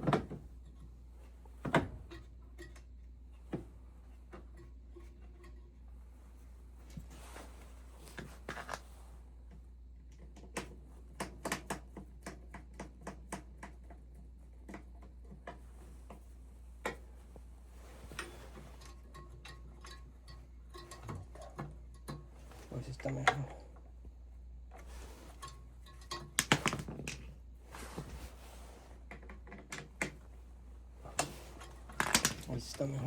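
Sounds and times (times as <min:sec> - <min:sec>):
clicks and taps of hand work: 0:09.5 - 0:17.1.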